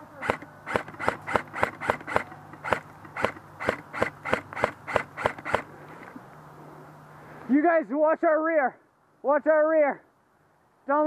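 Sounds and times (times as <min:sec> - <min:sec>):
airsoft gun shots: 0:00.2 - 0:05.7.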